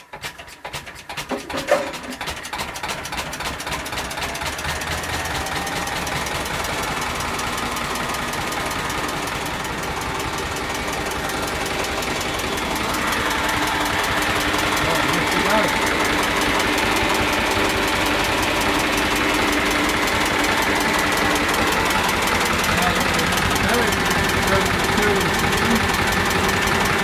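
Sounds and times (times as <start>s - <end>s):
diesel engine starting and knocking: 0.0s - 27.0s.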